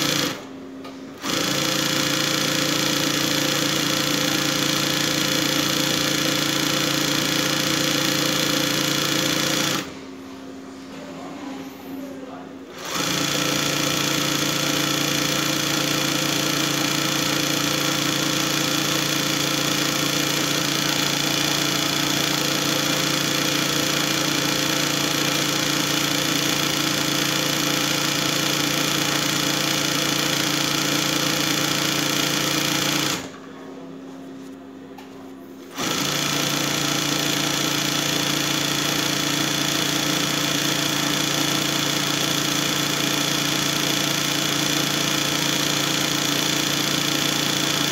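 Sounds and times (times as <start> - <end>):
sewing machine stitching: 0.0 - 0.5, 1.2 - 10.0, 12.7 - 33.4, 35.6 - 47.9
faint machine hum: 8.6 - 15.0, 33.2 - 35.8.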